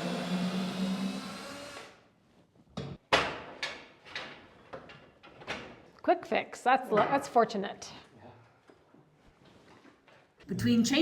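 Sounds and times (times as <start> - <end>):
cordless drill running: 0.0 - 2.0.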